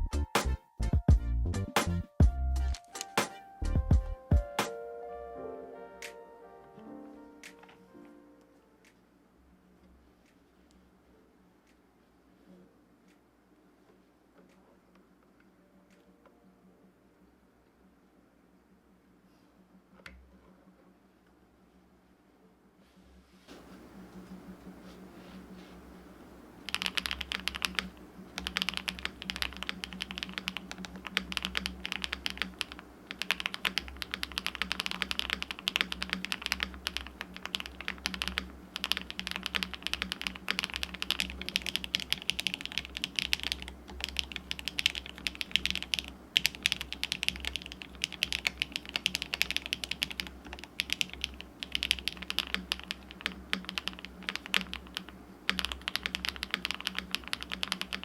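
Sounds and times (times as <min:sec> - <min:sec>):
mechanical keyboard typing: 0:26.7 - 0:58.0.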